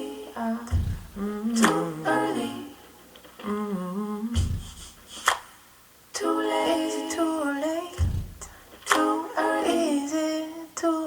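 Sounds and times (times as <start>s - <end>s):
low thud beat: 0.7s - 1.8s, 4.4s - 5.2s, 8.0s - 8.6s
woman humming: 0.7s - 2.1s, 3.4s - 4.9s
finger snaps: 1.6s - 1.9s, 5.2s - 5.6s.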